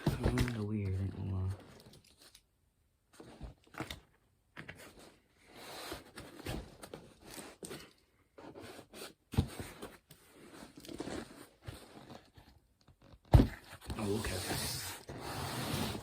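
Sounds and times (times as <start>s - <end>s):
cardboard box tearing and scraping: 13.9s - 16.0s.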